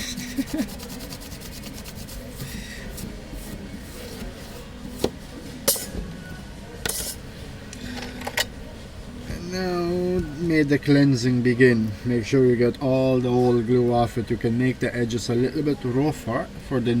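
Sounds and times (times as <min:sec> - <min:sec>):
toothbrush scrubbing: 0:00.0 - 0:03.1.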